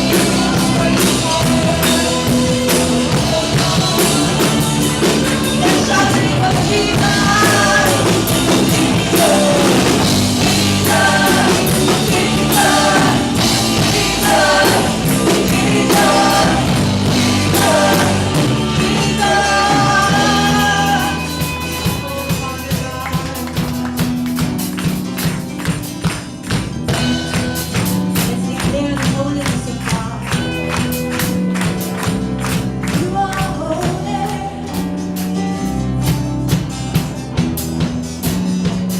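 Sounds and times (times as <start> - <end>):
person singing a praise song: 0.0 - 24.0, 26.9 - 30.8, 32.8 - 34.8
steady drum beat: 0.0 - 38.9
worship band playing: 0.0 - 38.9.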